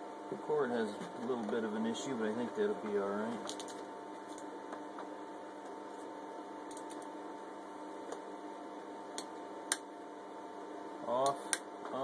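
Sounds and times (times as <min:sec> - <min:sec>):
background hum with high tone: 0:00.0 - 0:12.0.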